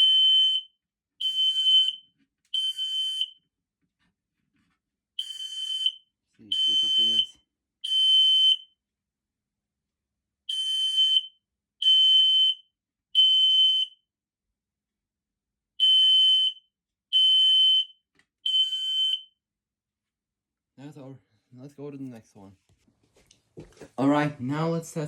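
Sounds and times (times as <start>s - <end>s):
smoke alarm beeping: 0.0s - 3.4s, 5.2s - 8.6s, 10.5s - 12.6s, 13.2s - 13.9s, 15.8s - 19.3s.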